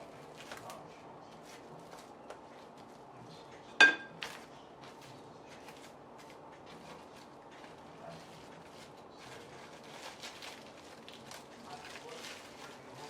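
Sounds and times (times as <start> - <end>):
utensil clinking on dish: 3.8 - 4.2.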